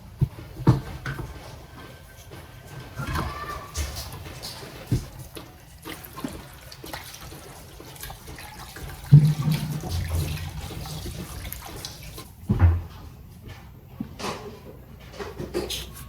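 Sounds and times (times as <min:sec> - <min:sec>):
tap water running into sink: 0:03.0 - 0:12.7
low thumps: 0:09.1 - 0:11.5.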